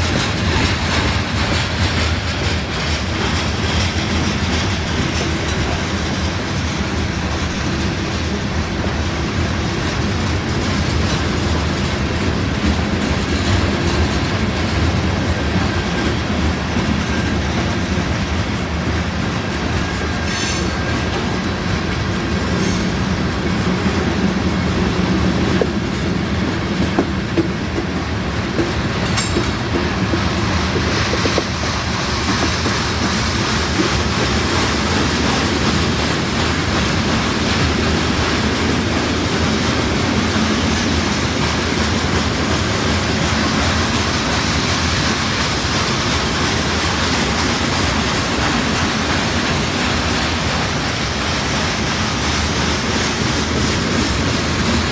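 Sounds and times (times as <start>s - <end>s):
train wheels rumbling on rails: 0.0s - 54.9s
sharp clacks: 28.6s - 36.8s.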